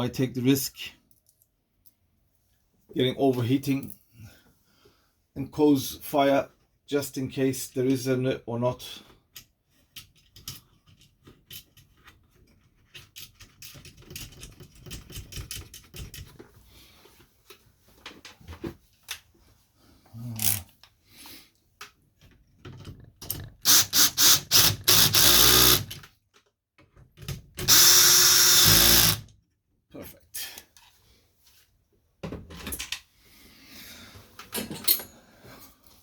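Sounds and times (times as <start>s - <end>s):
power drill running: 23.6s - 25.9s, 27.6s - 29.3s.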